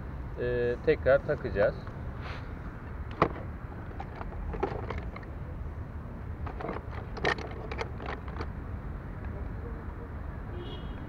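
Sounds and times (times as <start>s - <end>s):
metal brake parts clicking: 3.0s - 5.4s, 6.4s - 8.5s.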